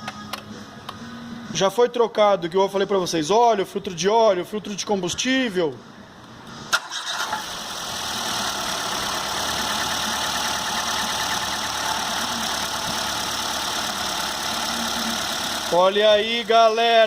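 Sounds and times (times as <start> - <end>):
car engine cranking and idling: 6.7 - 17.0.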